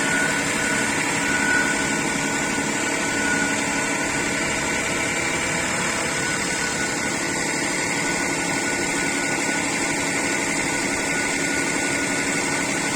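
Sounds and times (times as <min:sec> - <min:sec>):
engine running: 0:00.0 - 0:12.9
high whistle: 0:00.0 - 0:12.9.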